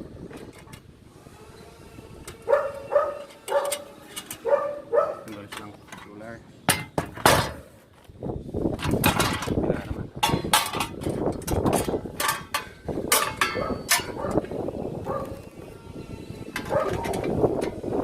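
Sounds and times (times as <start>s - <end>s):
parts knocking and clattering: 5.2s - 7.6s, 8.7s - 14.5s.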